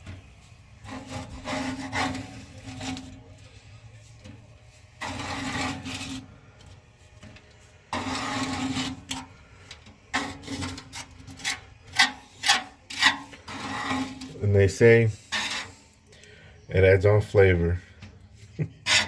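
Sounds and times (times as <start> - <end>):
scraper scraping grease off metal: 0.8 - 3.3, 4.9 - 6.3, 7.9 - 15.9, 18.8 - 19.0.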